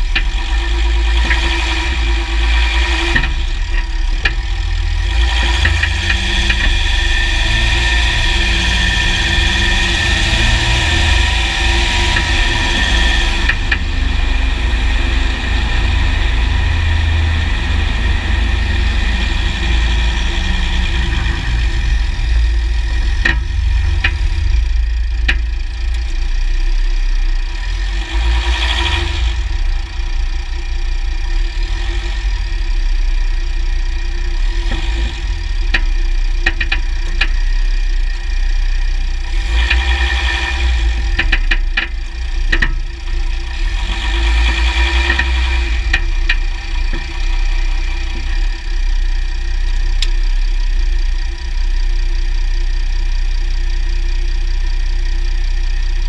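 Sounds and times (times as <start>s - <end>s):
drivetrain clicking: 0.0s - 2.0s, 3.0s - 15.8s, 17.9s - 26.9s, 35.6s - 38.2s, 40.8s - 50.3s
diesel engine low rumble: 0.0s - 56.0s.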